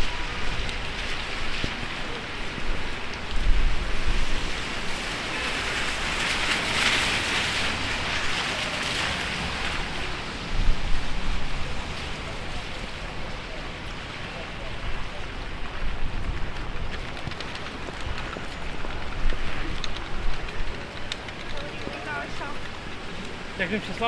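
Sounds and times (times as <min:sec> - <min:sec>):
heavy rain hissing: 0:00.0 - 0:16.0
wind rumbling on microphone: 0:00.0 - 0:23.6.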